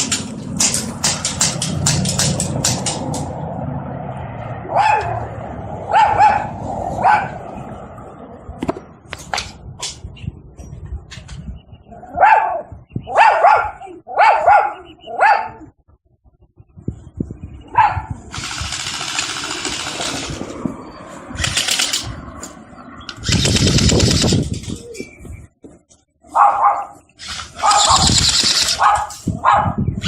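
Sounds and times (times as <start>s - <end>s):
dog barking: 4.7s - 5.2s, 5.9s - 7.4s, 12.2s - 15.7s, 17.7s - 18.1s, 26.3s - 27.0s, 27.6s - 28.1s, 28.8s - 29.8s
rasping noise: 27.2s - 29.4s.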